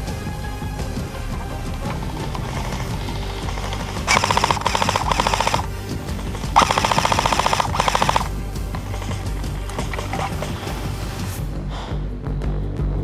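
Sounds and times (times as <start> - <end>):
background music: 0.0 - 13.0
airsoft gun full auto bursts: 2.1 - 11.1.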